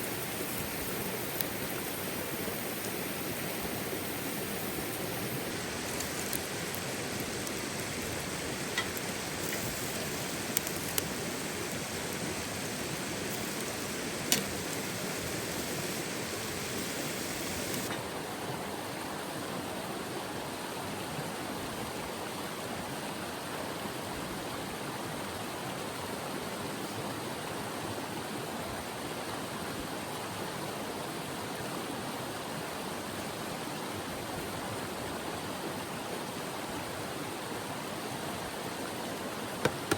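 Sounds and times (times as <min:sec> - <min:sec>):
sharp clicks: 0:04.9 - 0:17.9.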